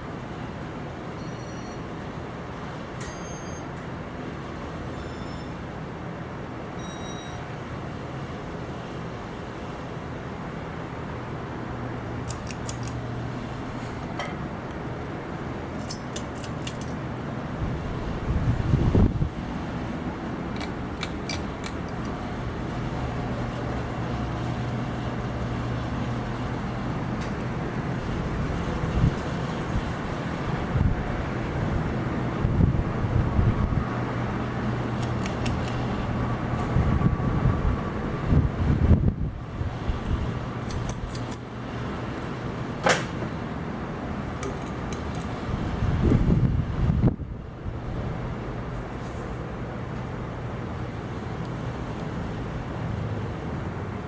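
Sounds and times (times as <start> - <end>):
ceiling fans air rush: 0.0 - 54.0
sharp click: 12.2 - 13.0, 20.6 - 22.2, 35.0 - 35.8
low motor hum: 17.1 - 42.7.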